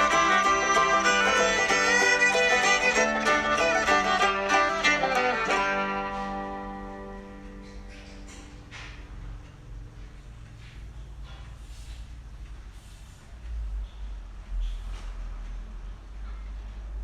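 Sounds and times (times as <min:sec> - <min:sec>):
background music: 0:00.0 - 0:07.6.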